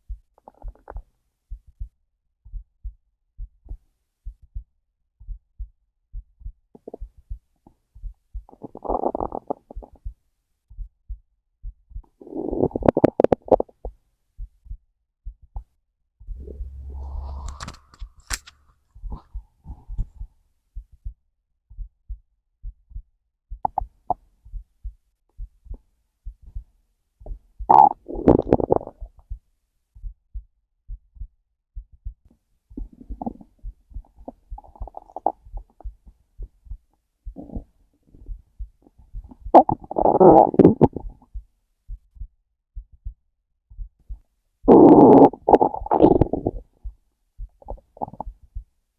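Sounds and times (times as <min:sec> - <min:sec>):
heartbeat thumps: 0:00.0 - 0:18.3, 0:19.0 - 0:48.7
stomach growling and gurgling: 0:00.4 - 0:01.1, 0:08.5 - 0:10.0, 0:12.1 - 0:14.0, 0:27.7 - 0:29.2, 0:32.8 - 0:35.9, 0:37.3 - 0:38.4, 0:39.3 - 0:41.4, 0:44.7 - 0:46.9, 0:47.6 - 0:48.4.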